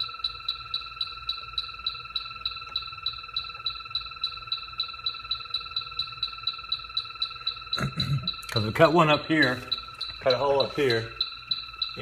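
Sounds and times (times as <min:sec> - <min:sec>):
leak detector ticking: 0:00.0 - 0:12.0
steady high whine: 0:00.0 - 0:12.0.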